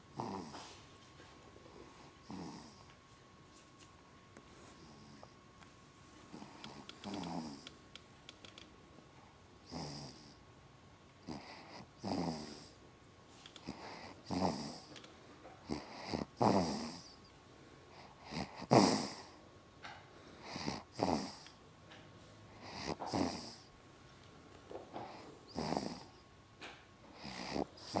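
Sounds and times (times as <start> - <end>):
rough rasping snore: 0.2 - 0.6, 2.2 - 2.8, 6.3 - 7.7, 11.3 - 12.7, 13.6 - 14.9, 15.7 - 17.2, 18.2 - 19.3, 20.4 - 21.5, 22.6 - 23.7, 25.1 - 26.2, 27.2 - 28.0.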